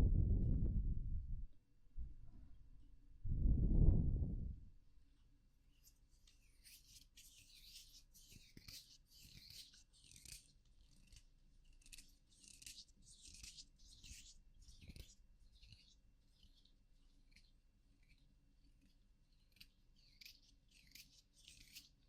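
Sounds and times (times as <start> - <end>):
soft scratchy rubbing strokes: 5.1 - 22.0.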